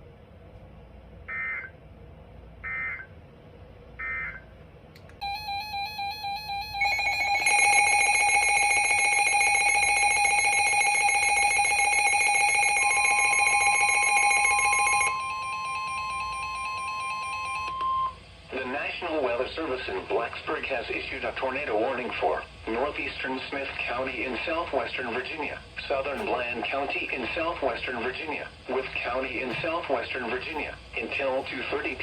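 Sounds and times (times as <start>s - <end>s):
shrill steady alert tone: 5.2s - 17.7s
pure warning alarm tone: 5.2s - 18.2s, 25.9s - 32.0s
rapid electronic beeping: 26.1s - 32.0s.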